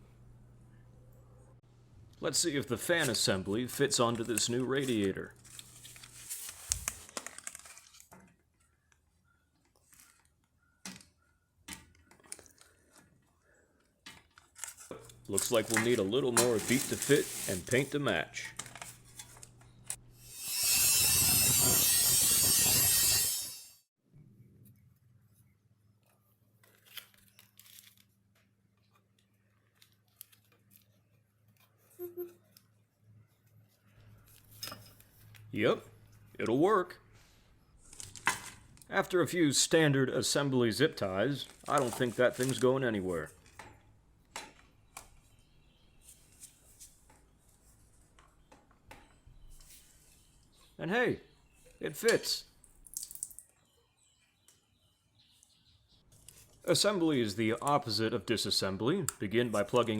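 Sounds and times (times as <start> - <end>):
low electrical hum: 0.0 - 6.3.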